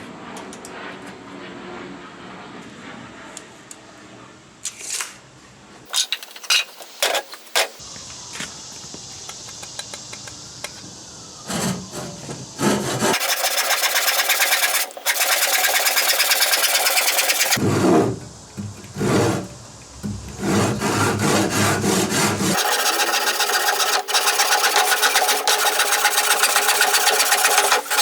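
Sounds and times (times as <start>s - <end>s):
tool rasping on wood: 12.6s - 17.8s, 20.4s - 28.0s.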